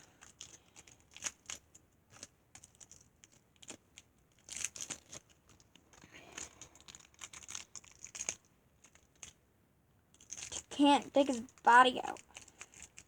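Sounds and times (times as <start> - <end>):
plastic wrapper crinkling and tearing: 6.4 - 9.4, 10.2 - 13.0.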